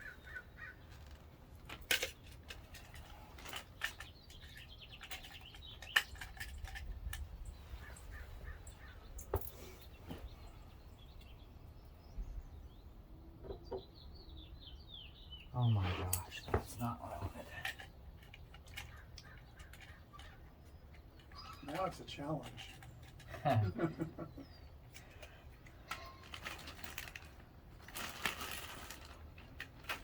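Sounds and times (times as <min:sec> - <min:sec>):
faint birds chirping: 0:00.0 - 0:30.0
lock tools clicking and tapping: 0:01.6 - 0:07.3, 0:17.6 - 0:23.4.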